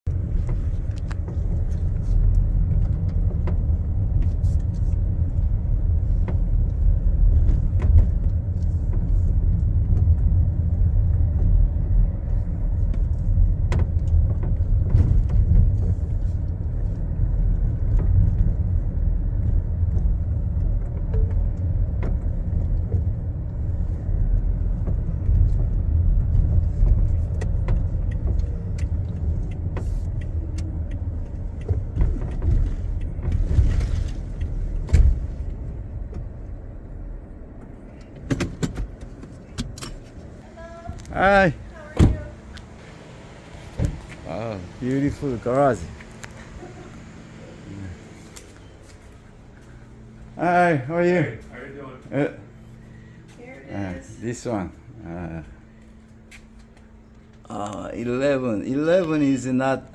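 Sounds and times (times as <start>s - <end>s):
car interior road and engine rumble: 0.0s - 59.9s
light ticks and rattles: 0.1s - 36.6s.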